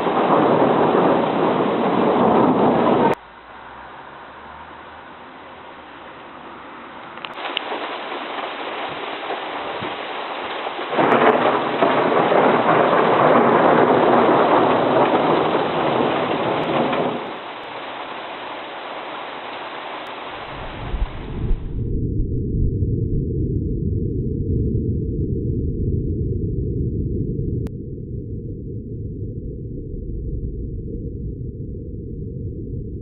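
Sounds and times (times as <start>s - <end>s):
thunder: 0.0s - 3.2s, 7.3s - 17.7s, 20.4s - 33.0s
low thunder rumble: 0.0s - 5.1s, 7.5s - 17.7s, 20.3s - 33.0s
heavy rain pouring: 0.0s - 21.8s.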